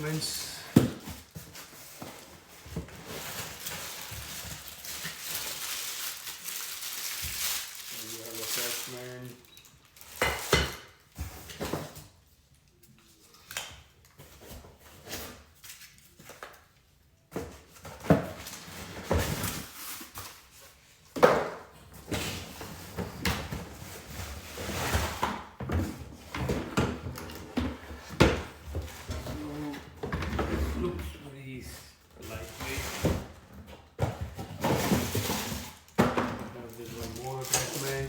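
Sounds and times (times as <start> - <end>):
packaging rustling: 0.0 - 10.2.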